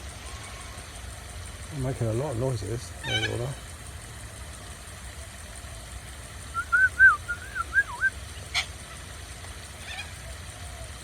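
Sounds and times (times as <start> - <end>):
low background rumble: 0.0 - 11.0
bird whistling warbling notes: 6.5 - 8.7.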